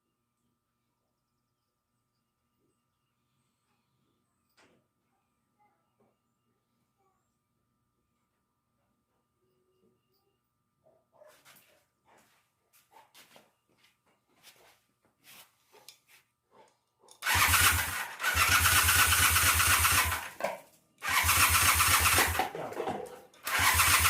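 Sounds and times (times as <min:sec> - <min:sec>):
motorcycle engine cranking: 0:17.2 - 0:20.4, 0:21.0 - 0:24.0.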